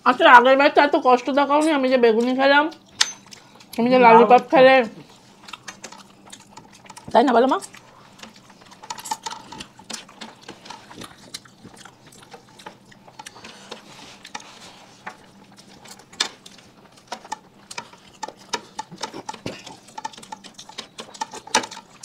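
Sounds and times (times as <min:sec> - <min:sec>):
chewing and lip-smacking: 0:02.2 - 0:22.0
food clicking on plates: 0:05.4 - 0:22.0.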